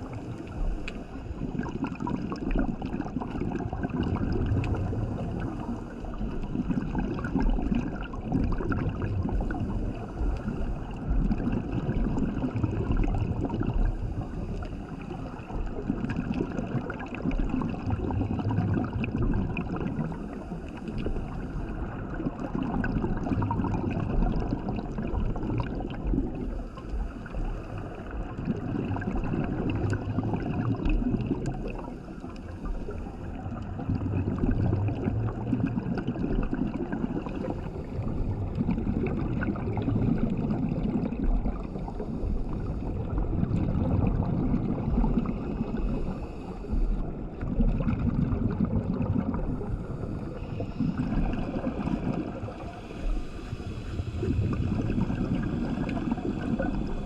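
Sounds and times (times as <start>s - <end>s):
bubbles gurgling: 0.0s - 57.0s
regulator breathing underwater: 9.2s - 15.7s, 19.7s - 23.3s, 24.3s - 40.1s, 40.9s - 47.6s, 48.7s - 57.0s.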